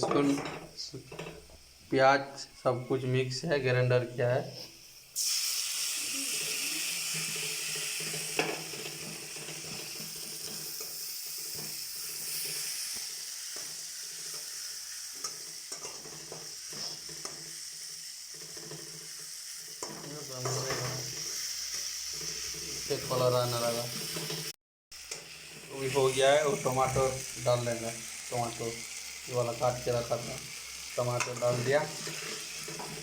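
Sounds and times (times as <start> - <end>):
paste sizzling in hot oil: 0.3 - 33.0
spatula stirring and scraping: 31.0 - 33.0.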